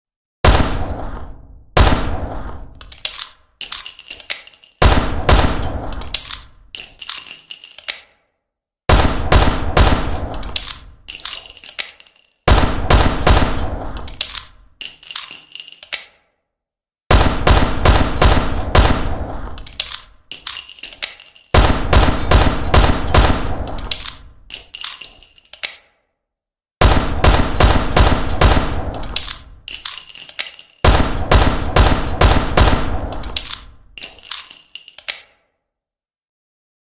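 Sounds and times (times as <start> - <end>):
metallic clinks: 2.8 - 4.9, 5.6 - 8.3, 9.2 - 12.6, 13.5 - 16.4, 18.5 - 26.0, 27.9 - 32.4, 33.1 - 35.5.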